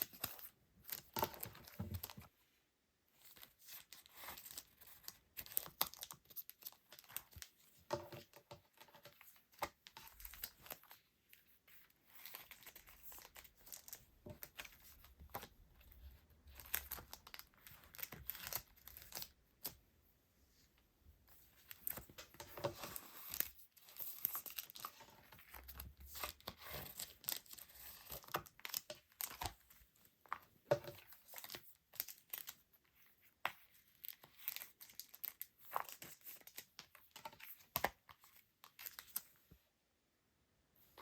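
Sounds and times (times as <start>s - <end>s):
packaging crinkling and tearing: 34.0s - 37.8s.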